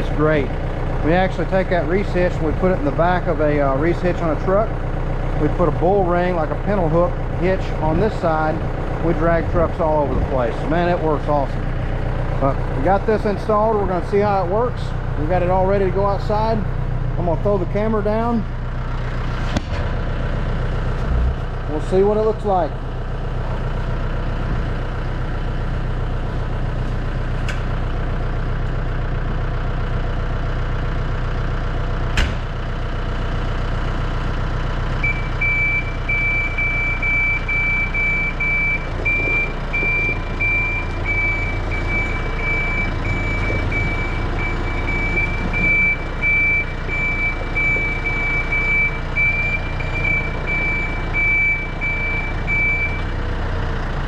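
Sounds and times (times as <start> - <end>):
tractor engine running: 0.0 - 54.0
backup alarm beeping: 35.0 - 53.1.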